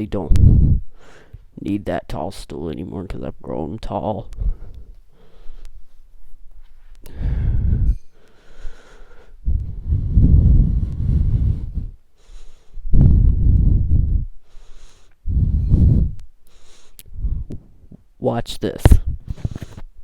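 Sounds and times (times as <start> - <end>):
breathing on microphone: 0.4 - 1.5, 4.4 - 6.0, 6.6 - 17.6, 19.1 - 19.9.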